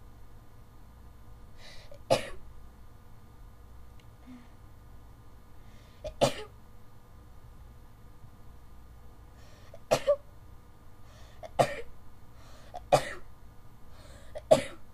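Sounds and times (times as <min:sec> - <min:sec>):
sharp breath in: 0:12.4 - 0:12.8.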